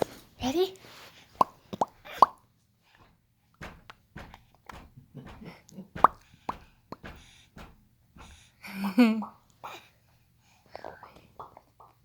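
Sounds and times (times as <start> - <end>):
baby making mouth pops: 11.4 - 12.0.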